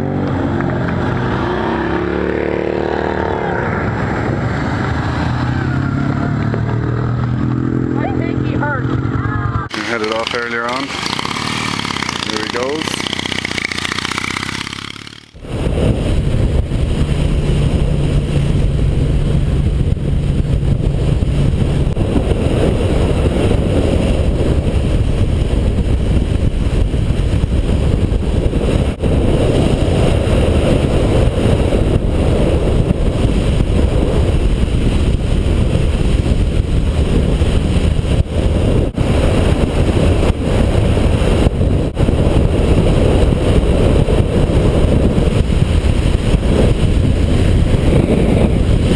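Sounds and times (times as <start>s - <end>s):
motorcycle engine running: 9.7s - 15.4s
wind roar on microphone: 15.5s - 48.9s.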